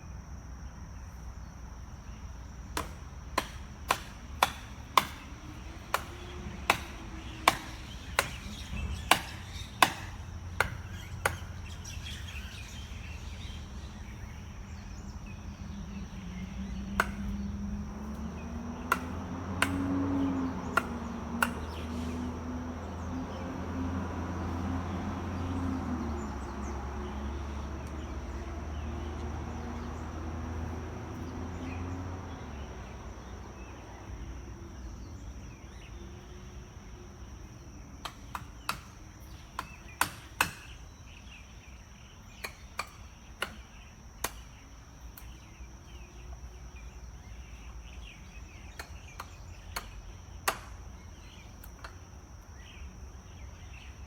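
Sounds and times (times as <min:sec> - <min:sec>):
sharp knocks: 0:02.8 - 0:05.3, 0:05.9 - 0:11.5, 0:17.0 - 0:17.3.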